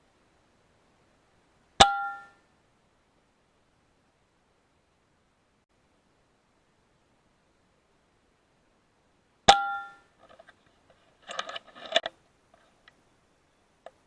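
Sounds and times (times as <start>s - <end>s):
brief metallic ring: 1.8s - 2.5s, 9.5s - 10.1s
rifle action clicks and clatter: 11.2s - 12.7s.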